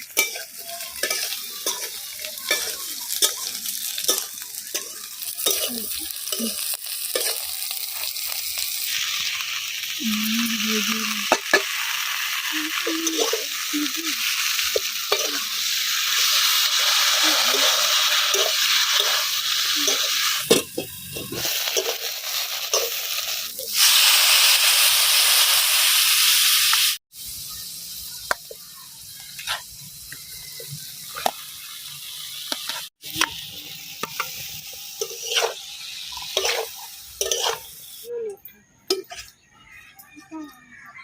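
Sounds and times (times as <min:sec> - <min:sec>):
spoon scraping a pan: 0:00.0 - 0:08.1, 0:13.0 - 0:13.5, 0:14.6 - 0:15.5, 0:16.1 - 0:23.2, 0:29.4 - 0:30.2, 0:32.5 - 0:37.9
oil sizzling in a pan: 0:00.0 - 0:40.9.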